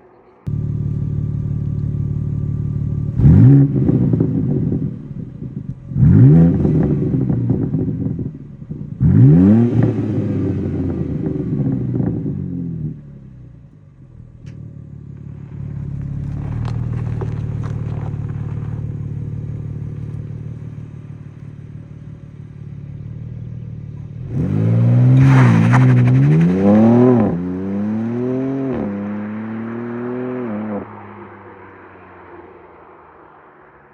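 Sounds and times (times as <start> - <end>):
car engine revving: 0.0 - 33.9.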